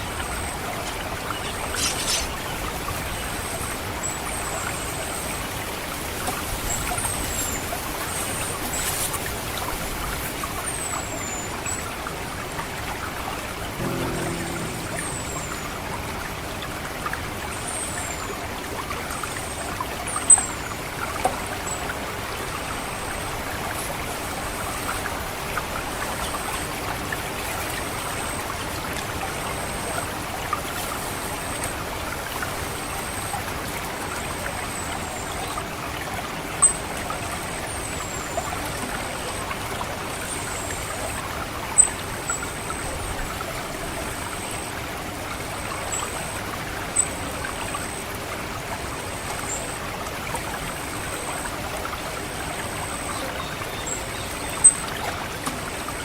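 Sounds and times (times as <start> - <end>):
water trickling: 10.6 - 22.8
thrush high call notes: 13.8 - 16.2.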